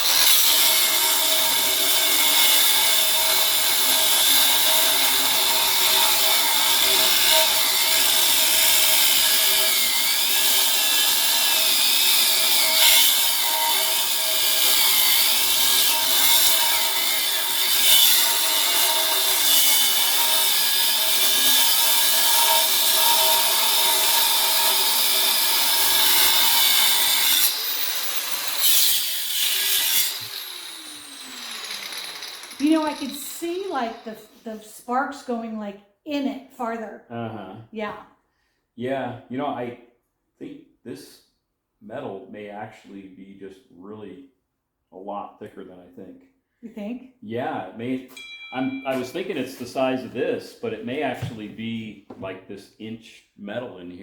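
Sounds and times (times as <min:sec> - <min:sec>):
power saw cutting steel: 0:00.0 - 0:34.7, 0:48.2 - 0:50.1.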